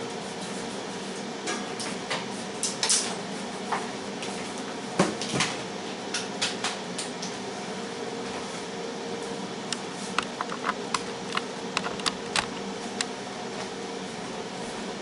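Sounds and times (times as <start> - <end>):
air fryer fan hum: 0.0 - 15.0.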